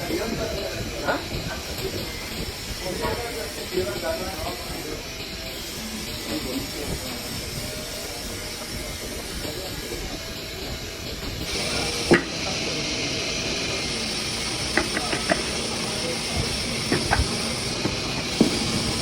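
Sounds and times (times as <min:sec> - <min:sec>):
steady hissing: 0:11.2 - 0:19.0
sharp knock: 0:12.1 - 0:12.4, 0:16.9 - 0:18.6.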